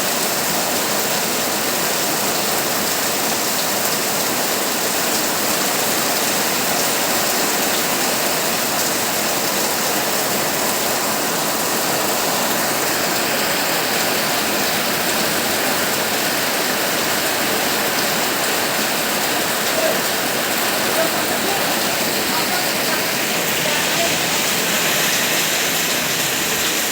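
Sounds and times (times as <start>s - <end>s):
heavy rain on a tin roof: 0.0s - 26.9s.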